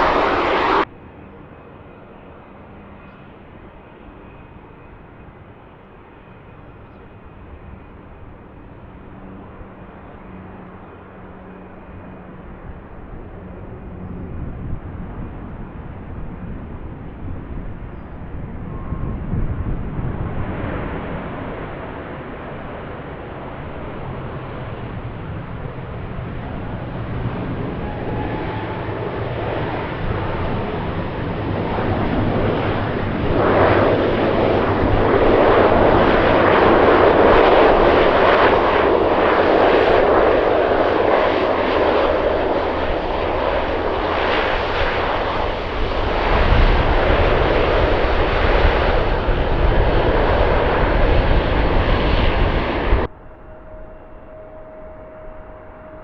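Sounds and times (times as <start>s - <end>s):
deep rumble: 0.0s - 0.9s
airliner engines rushing: 0.0s - 56.0s.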